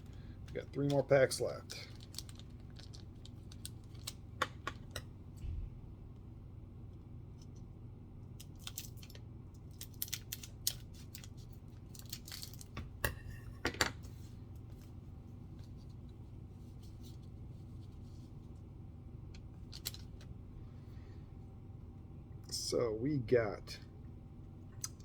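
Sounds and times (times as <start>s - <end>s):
wrapper crinkling: 1.7s - 4.2s, 8.4s - 12.8s
wrapper ripping: 8.5s - 12.7s.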